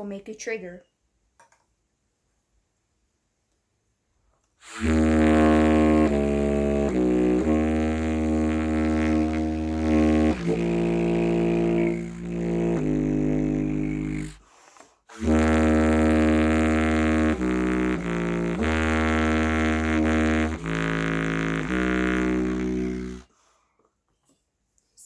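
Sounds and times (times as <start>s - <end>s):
low buzzy reed tone of trumpet: 4.6s - 14.4s, 15.1s - 23.3s.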